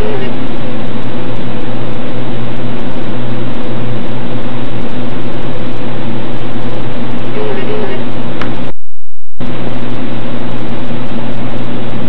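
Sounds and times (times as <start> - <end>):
hard drive humming and whirring: 0.0 - 12.0.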